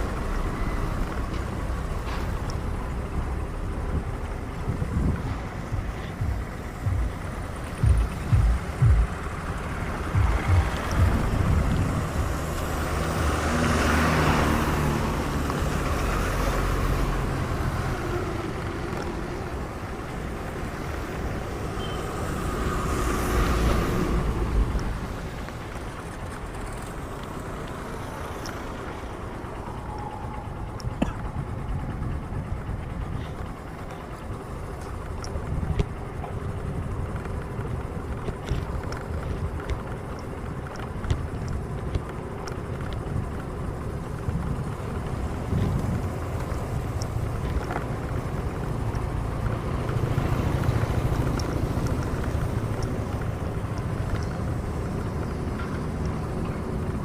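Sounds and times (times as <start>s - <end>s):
vehicle passing: 0.0s - 35.1s
traffic rumble: 0.0s - 57.0s.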